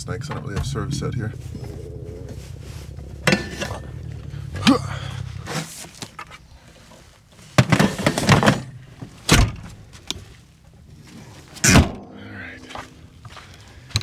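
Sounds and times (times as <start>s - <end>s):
low hum: 0.0s - 7.2s, 10.8s - 14.0s.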